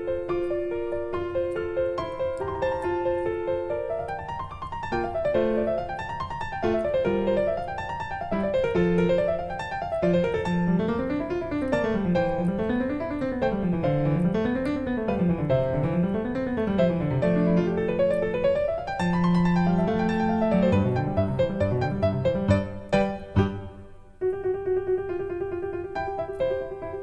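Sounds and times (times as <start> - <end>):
flowing piano music: 0.0 - 27.0.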